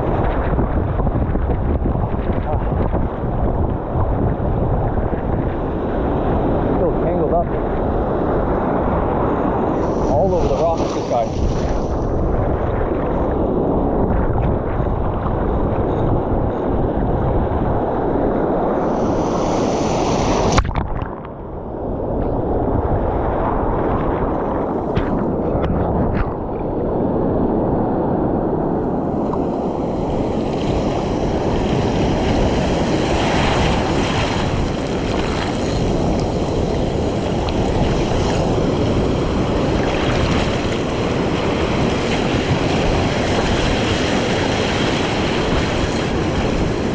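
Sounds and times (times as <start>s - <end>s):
wind buffeting microphone: 0.0s - 46.9s
surf over rocks: 8.8s - 16.6s, 29.0s - 46.9s.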